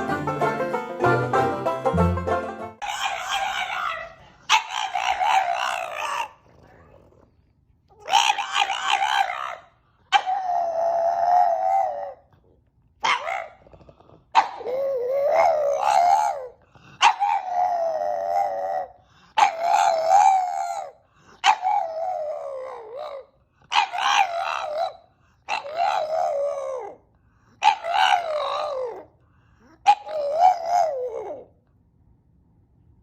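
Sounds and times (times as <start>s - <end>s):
dog howling: 2.8s - 6.6s, 8.0s - 12.3s, 14.4s - 27.0s, 27.6s - 29.1s, 29.8s - 31.6s.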